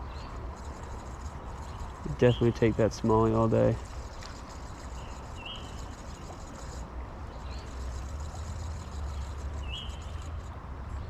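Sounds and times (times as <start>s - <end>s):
bird chirps: 4.8s - 6.3s, 8.8s - 10.4s.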